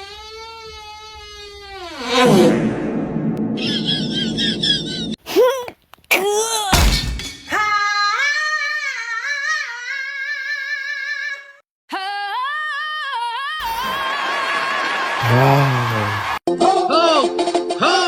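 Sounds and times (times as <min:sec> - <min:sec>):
low voice: 0:15.2 - 0:16.3.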